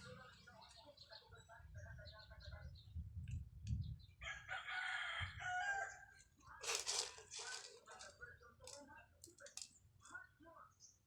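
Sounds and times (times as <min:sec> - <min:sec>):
rooster crowing: 0:04.2 - 0:06.0
brief rustling: 0:06.6 - 0:08.8.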